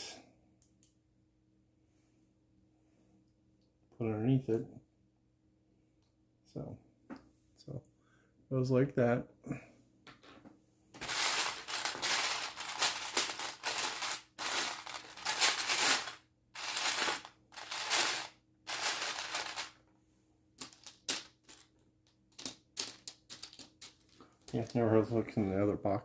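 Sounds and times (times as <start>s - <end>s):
plastic pieces clicking: 11.0s - 19.8s, 20.6s - 24.6s
plastic pieces rattling in a box: 11.0s - 19.8s, 20.6s - 24.8s.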